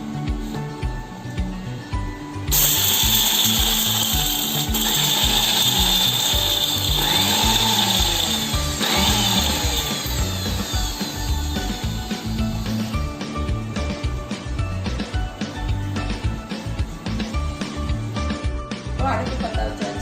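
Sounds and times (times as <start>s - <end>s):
background music: 0.0s - 20.0s
mixer grinder whining: 2.5s - 14.0s.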